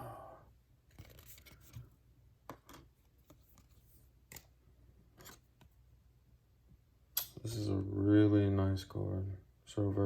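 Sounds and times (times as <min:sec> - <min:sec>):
cards rustling and clicking: 0:00.9 - 0:05.8.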